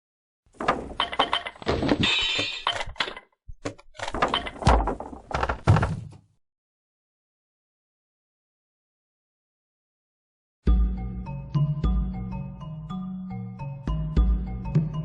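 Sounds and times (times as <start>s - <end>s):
knocks and thumps: 0.5s - 6.4s.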